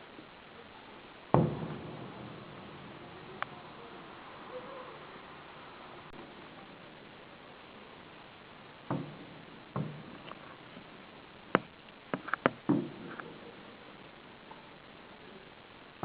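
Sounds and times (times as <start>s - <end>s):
firework sharp cracks: 1.2s - 4.4s, 8.7s - 13.3s
firework booms: 1.3s - 4.4s, 8.8s - 11.8s.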